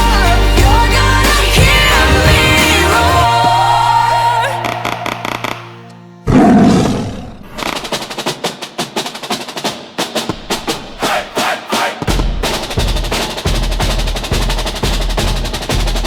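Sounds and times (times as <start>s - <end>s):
rapid sharp percussion hits: 0.0s - 5.7s, 7.6s - 16.0s
soundtrack music: 0.0s - 6.6s
sudden deep roar: 0.0s - 7.7s.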